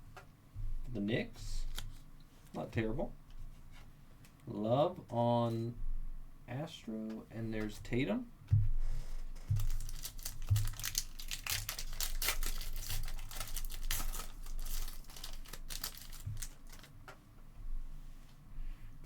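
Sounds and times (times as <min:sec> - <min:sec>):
soft handling knocks: 0:00.1 - 0:04.3, 0:07.1 - 0:11.0
foil wrapper tearing and crinkling: 0:01.6 - 0:02.0, 0:09.4 - 0:16.9.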